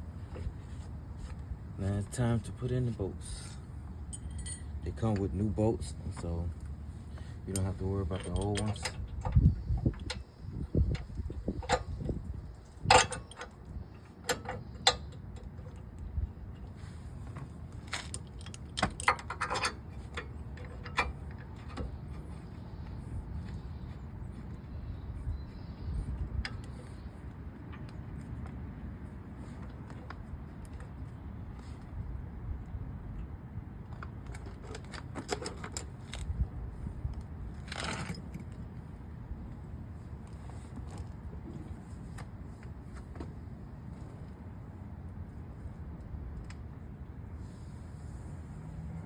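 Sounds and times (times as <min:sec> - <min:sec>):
steady low rumble: 0:00.0 - 0:14.2
metal parts scraping rattle: 0:07.4 - 0:09.1.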